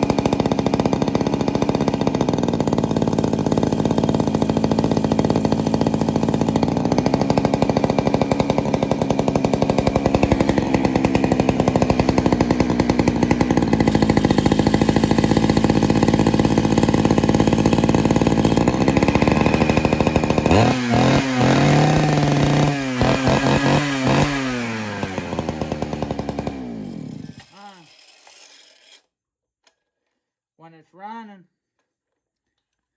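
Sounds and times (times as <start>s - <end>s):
chainsaw running and revving: 0.0s - 28.0s.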